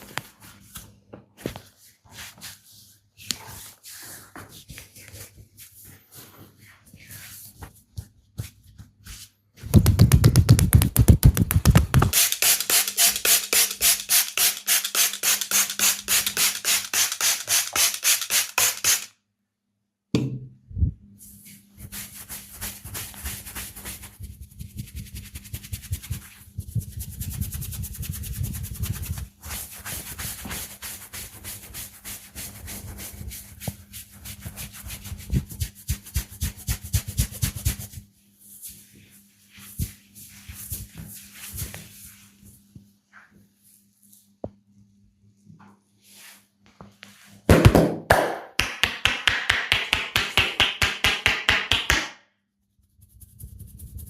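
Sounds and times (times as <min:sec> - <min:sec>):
hands striking and rubbing skin: 0:09.6 - 0:19.1, 0:47.5 - 0:52.1.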